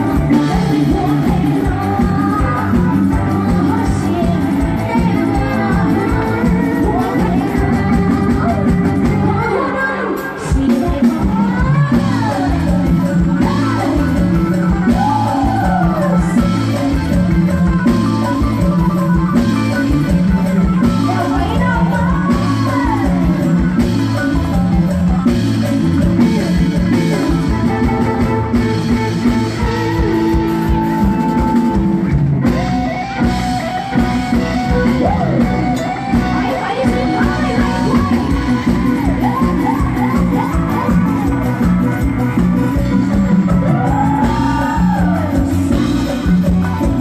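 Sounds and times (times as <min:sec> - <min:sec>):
sliding electric guitar melody: 0:00.0 - 0:47.0
drum kit and bass beat: 0:10.4 - 0:47.0.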